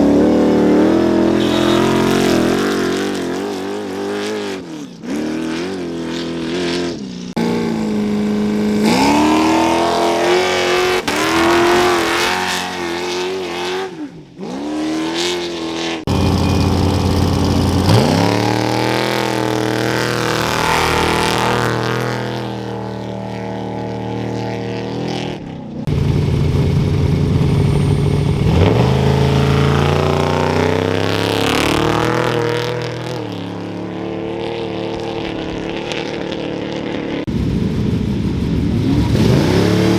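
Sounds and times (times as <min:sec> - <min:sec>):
race trucks revving and accelerating: 0:00.0 - 0:37.4, 0:38.5 - 0:39.9.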